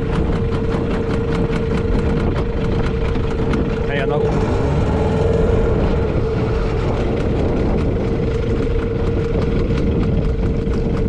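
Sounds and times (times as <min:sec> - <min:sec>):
outboard motor running: 0:00.0 - 0:11.0.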